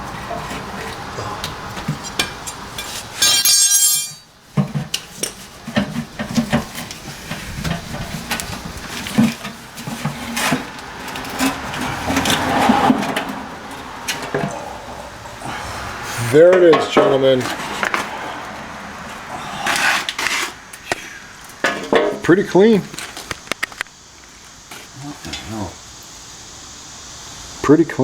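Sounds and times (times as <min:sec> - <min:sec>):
metallic clinks of tools: 0:02.0 - 0:04.3.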